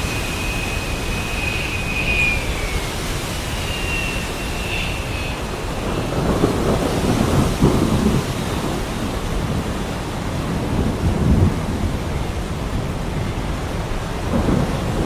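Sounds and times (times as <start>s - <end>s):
faint thin whistle: 0.0s - 6.2s
crackling roll of thunder: 0.0s - 15.0s
low rumble of thunder: 0.0s - 15.0s
steady rain: 0.0s - 15.0s
wind: 0.0s - 15.0s.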